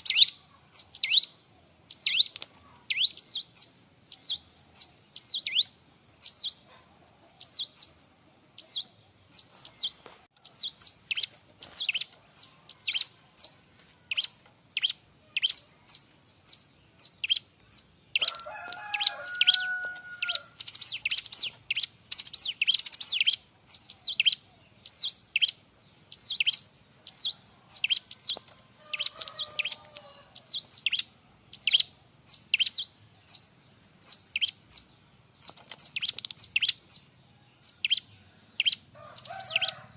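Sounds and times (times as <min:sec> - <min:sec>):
lower-pitched bird call: 0:18.2 - 0:34.9.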